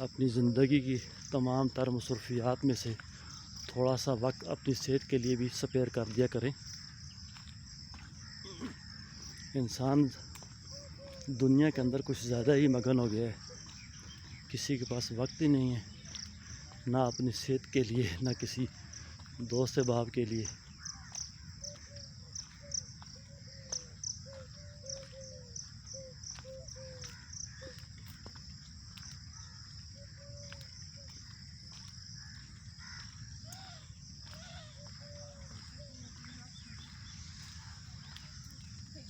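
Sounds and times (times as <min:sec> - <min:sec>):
crickets trilling: 0:00.0 - 0:39.0
birds calling: 0:08.0 - 0:31.6, 0:32.2 - 0:38.9.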